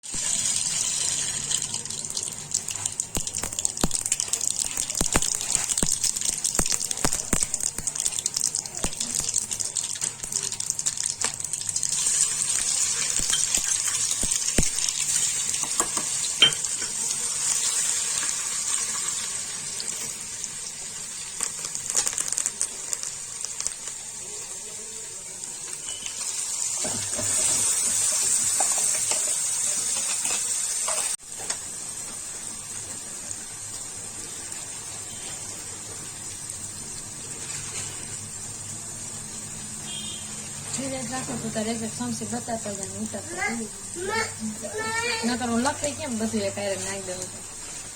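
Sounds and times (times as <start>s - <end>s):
food sizzling in a pan: 0.0s - 47.9s
spoon clinking against pan: 13.2s - 14.0s, 15.6s - 17.0s.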